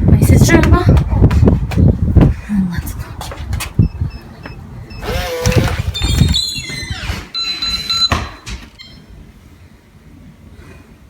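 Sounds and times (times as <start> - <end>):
alarm panel beeps: 3.8 - 6.4, 7.3 - 9.2
door squealing open: 4.9 - 9.1.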